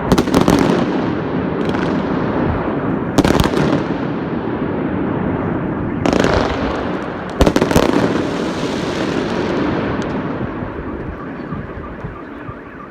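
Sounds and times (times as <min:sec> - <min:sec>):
fireworks crackling and banging: 0:00.0 - 0:12.2.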